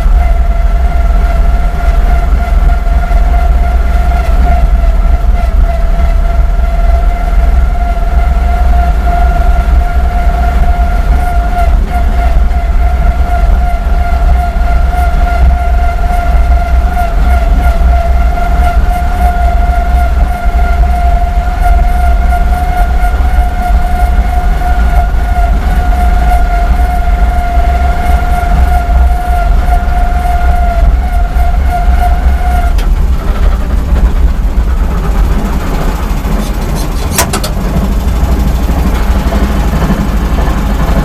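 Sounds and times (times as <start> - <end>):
drivetrain high whine: 0.0 - 41.0
vehicle engine rumbling: 0.0 - 41.0.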